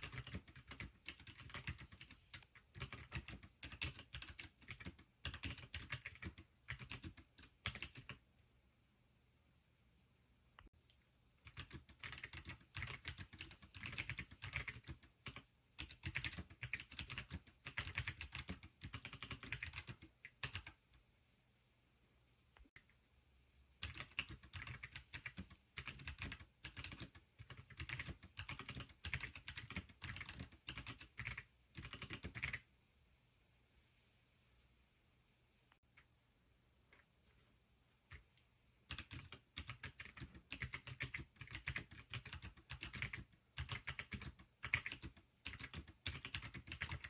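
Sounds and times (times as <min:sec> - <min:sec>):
fast keyboard typing: 0:00.0 - 0:08.2, 0:11.4 - 0:20.8, 0:23.8 - 0:32.6, 0:38.9 - 0:47.0.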